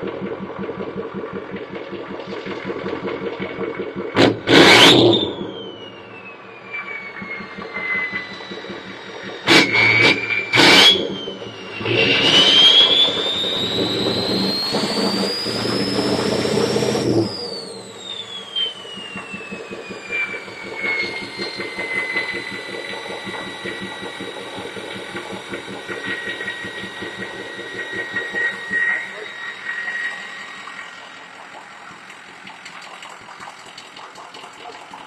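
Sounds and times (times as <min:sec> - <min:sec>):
diesel truck engine revving: 0:02.6 - 0:05.4, 0:07.3 - 0:29.3
turbo whistle: 0:04.2 - 0:31.8.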